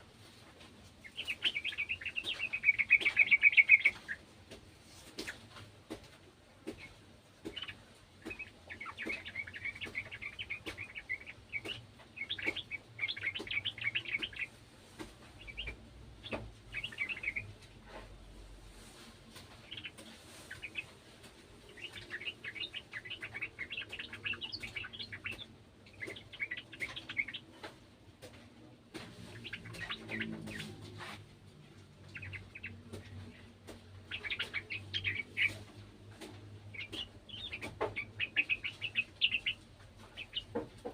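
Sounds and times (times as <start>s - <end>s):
bird chattering song: 1.0s - 4.2s, 6.6s - 14.6s, 15.4s - 17.6s, 19.6s - 20.9s, 21.6s - 27.8s, 29.2s - 31.2s, 32.0s - 40.9s.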